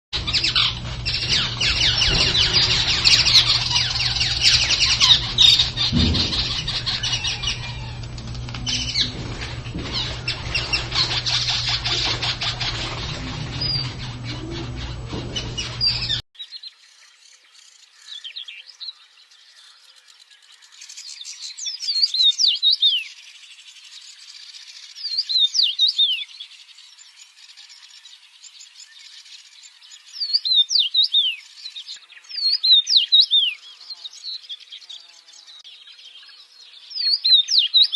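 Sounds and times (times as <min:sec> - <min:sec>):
whistled bird song: 0:00.2 - 0:09.2, 0:09.8 - 0:16.7, 0:17.3 - 0:37.9
steady low hum: 0:00.2 - 0:16.2
birds chirping: 0:00.2 - 0:37.9.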